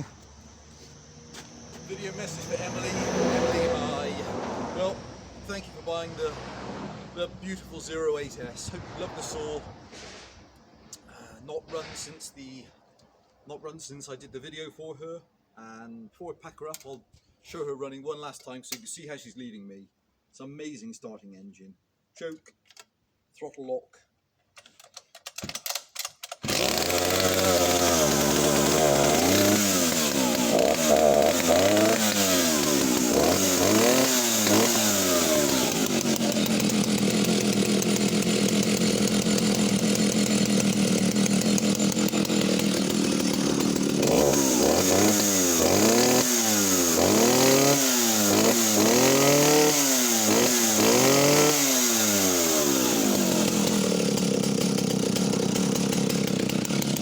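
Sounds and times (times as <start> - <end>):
chainsaw starting and revving: 0.0 - 10.4, 25.6 - 57.0.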